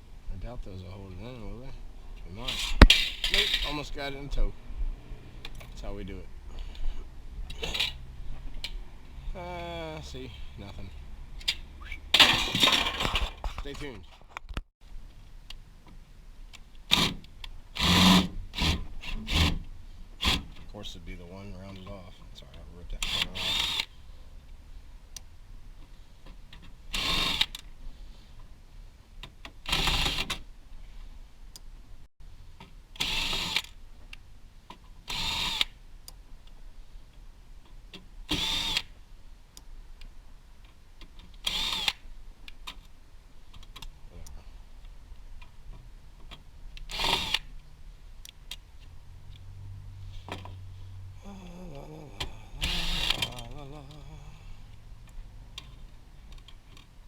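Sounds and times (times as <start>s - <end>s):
cordless drill driving screws: 16.9s - 19.6s, 23.0s - 23.9s, 27.0s - 27.6s, 29.7s - 30.4s, 33.0s - 33.8s, 35.0s - 35.8s, 38.3s - 38.9s, 41.4s - 42.0s, 46.8s - 47.5s, 52.6s - 53.8s.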